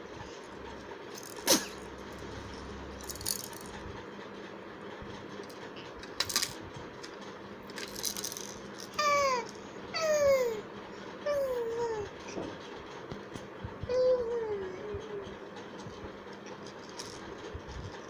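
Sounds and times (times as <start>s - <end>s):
young child crying: 9.0s - 12.2s, 13.9s - 15.3s.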